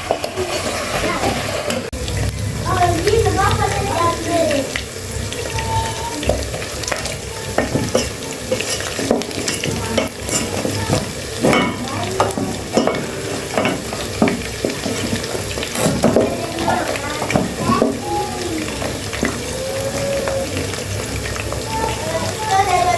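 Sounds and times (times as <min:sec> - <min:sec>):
food frying in a pot: 0:00.0 - 0:22.9
utensil scraping and knocking pot: 0:05.3 - 0:18.0.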